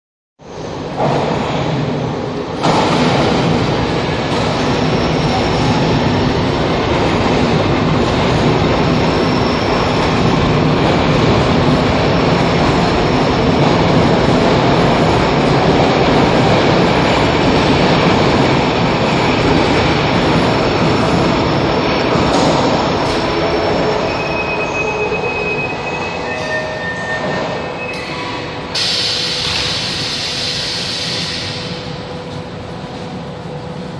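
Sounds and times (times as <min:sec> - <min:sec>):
train rumbling on rails: 0:00.4 - 0:33.9
high wheel squeal: 0:23.1 - 0:29.2.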